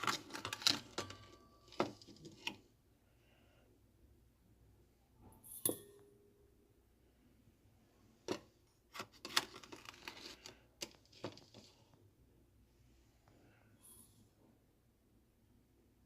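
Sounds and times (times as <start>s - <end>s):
rustling and scraping utensils: 0.0s - 2.7s, 8.3s - 12.0s
light clink: 5.4s - 6.2s.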